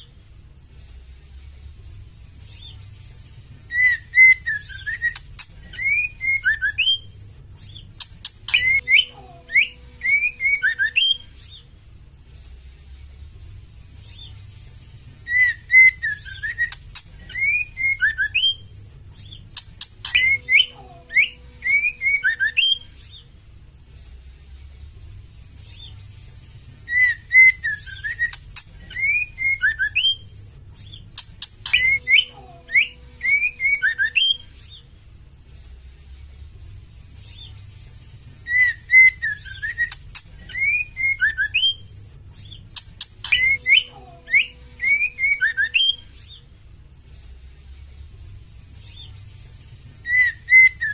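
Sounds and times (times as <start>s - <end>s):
bird whistled calls and ticks: 3.4s - 11.7s, 14.0s - 23.3s, 25.6s - 34.8s, 37.2s - 46.4s, 48.8s - 50.9s.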